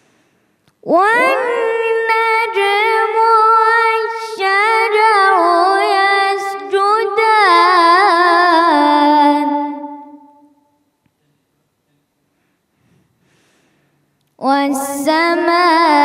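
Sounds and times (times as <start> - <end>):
boy reciting melismatic chant: 0.8 - 10.4, 14.4 - 16.0.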